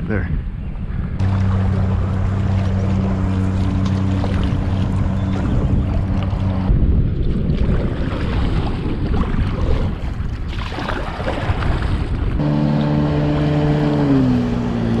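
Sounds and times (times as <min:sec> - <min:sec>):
wind buffeting microphone: 0:00.0 - 0:15.0
water noise: 0:00.9 - 0:15.0
engine drone: 0:01.2 - 0:07.1, 0:12.4 - 0:15.0.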